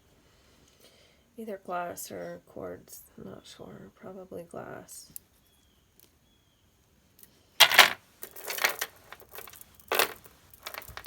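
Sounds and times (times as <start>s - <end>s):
beads rattling and clinking: 7.6s - 11.0s
glass beads clattering: 7.6s - 11.0s.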